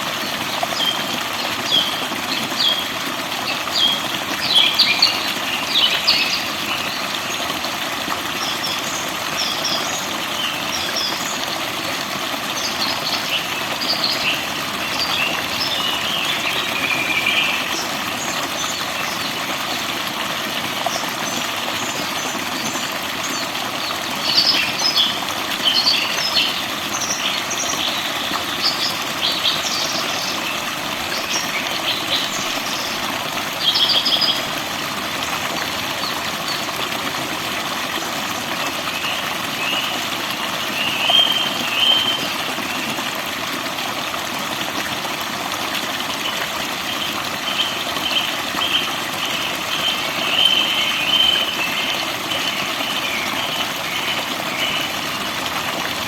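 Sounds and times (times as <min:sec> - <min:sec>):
flowing water: 0:00.0 - 0:56.0
birds chirping and trilling: 0:47.0 - 0:54.9.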